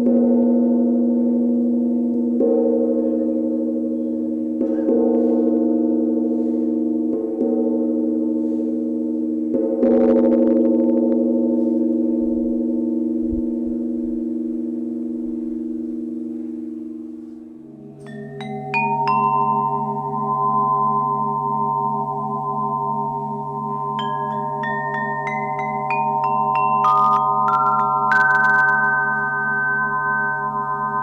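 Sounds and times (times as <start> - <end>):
struck metal bowl ringing: 9.6 - 31.0.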